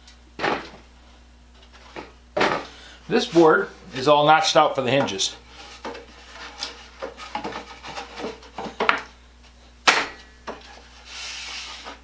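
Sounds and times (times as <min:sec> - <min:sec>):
wooden boards knocking and rubbing: 0:00.4 - 0:00.8, 0:01.8 - 0:03.5, 0:04.8 - 0:09.1, 0:09.9 - 0:12.0.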